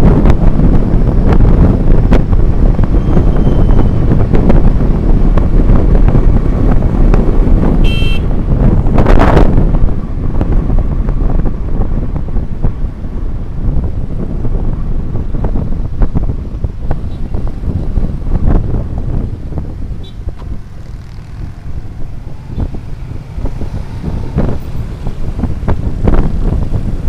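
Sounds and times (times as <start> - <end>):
road rumble: 0.0 - 27.0
rush of noise: 0.0 - 27.0
wind rushing over microphone: 0.0 - 27.0
horn beep: 7.8 - 8.3.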